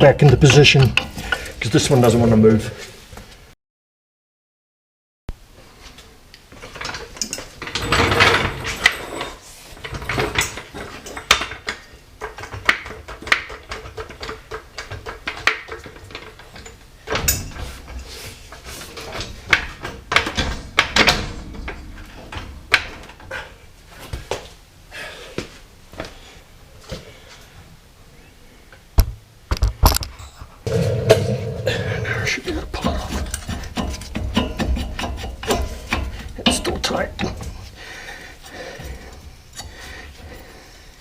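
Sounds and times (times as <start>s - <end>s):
metal knocks clanks and scrapes: 30.7s - 37.7s.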